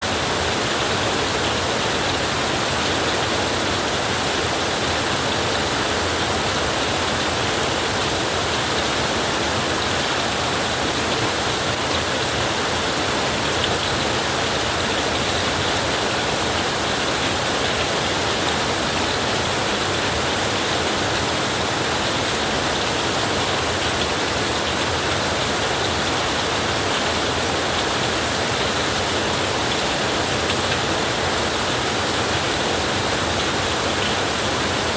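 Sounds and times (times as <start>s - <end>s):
heavy rain on a tin roof: 0.0s - 34.9s.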